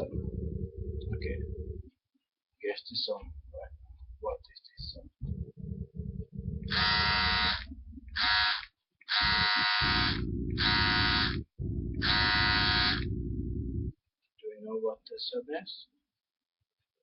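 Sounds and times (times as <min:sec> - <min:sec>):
low rumbling hum: 0:00.0 - 0:01.9, 0:03.2 - 0:08.5, 0:09.1 - 0:14.0
harsh buzzy electronic tone: 0:05.8 - 0:13.9.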